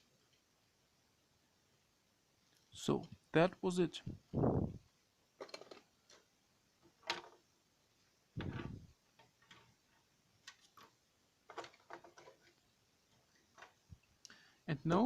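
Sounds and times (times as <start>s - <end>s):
plastic parts clicking: 10.4s - 12.6s.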